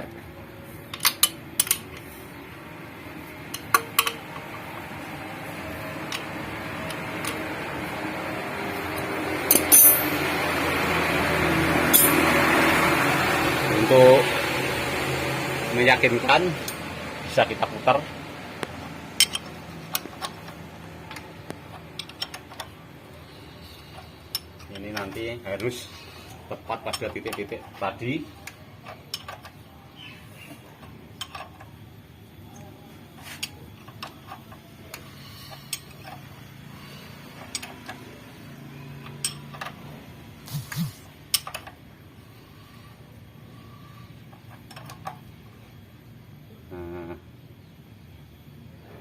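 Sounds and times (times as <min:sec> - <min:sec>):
faint steady hum: 0:13.8 - 0:49.0
hand tools clicking on metal: 0:19.2 - 0:22.8, 0:23.9 - 0:25.8.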